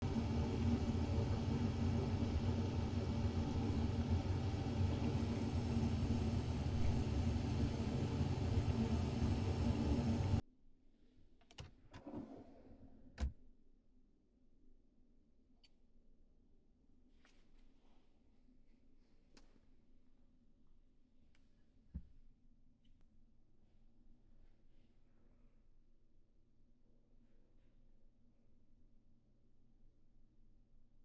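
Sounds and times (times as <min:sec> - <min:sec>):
loud motor hum: 0:00.0 - 0:10.4.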